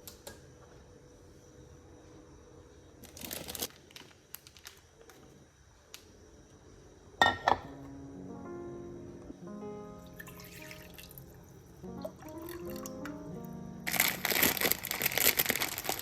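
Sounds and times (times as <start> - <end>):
background music: 7.7 - 15.8
small objects clicking and clattering: 13.9 - 16.0.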